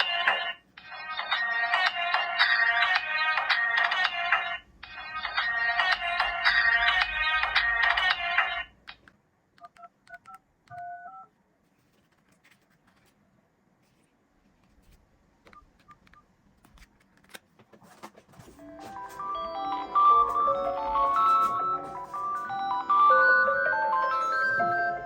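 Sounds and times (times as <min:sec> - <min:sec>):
phone keypad dialing tones: 0:09.6 - 0:11.3
phone ringtone: 0:18.6 - 0:25.0.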